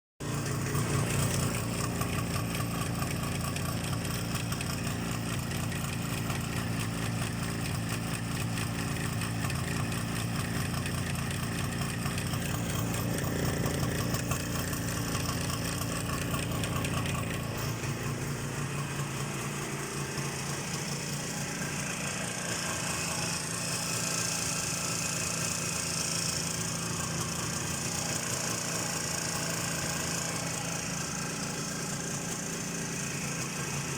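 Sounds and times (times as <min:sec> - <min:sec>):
two-stroke engine running: 0:00.2 - 0:33.9.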